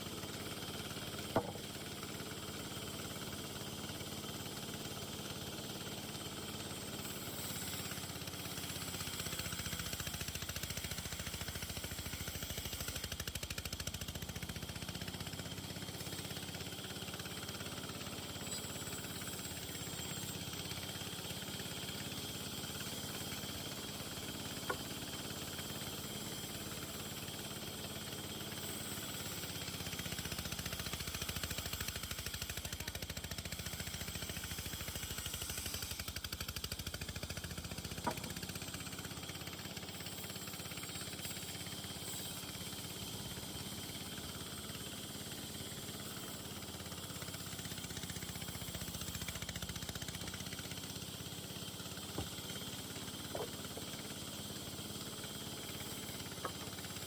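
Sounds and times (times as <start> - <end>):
low mechanical motor hum: 0.0 - 12.2, 15.3 - 36.2, 37.1 - 40.8, 50.2 - 57.0.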